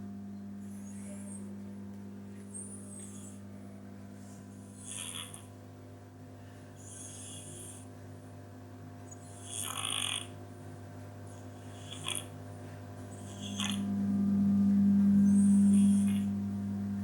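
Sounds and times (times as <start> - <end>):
steady low hum: 0.0 - 17.0
cat snoring: 2.5 - 3.4, 4.6 - 5.6, 6.8 - 7.9, 9.1 - 10.4, 11.3 - 12.4, 13.1 - 14.0, 15.2 - 16.4.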